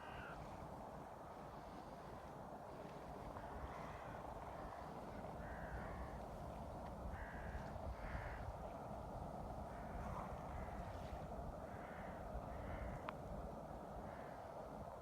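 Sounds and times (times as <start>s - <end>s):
bird calling: 0.0s - 0.5s
low background hiss: 0.0s - 15.0s.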